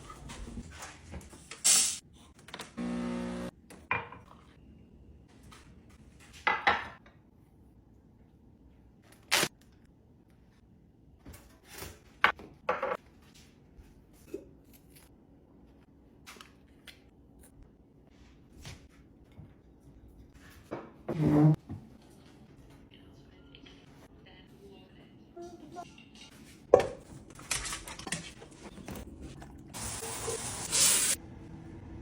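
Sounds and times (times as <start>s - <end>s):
kitchen items rustling: 25.6s - 31.2s.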